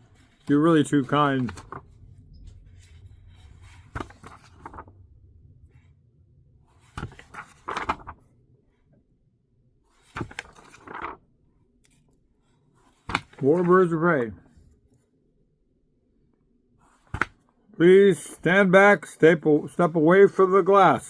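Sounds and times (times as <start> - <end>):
paper rustling: 0.0 - 5.0, 6.7 - 8.3, 9.9 - 14.6.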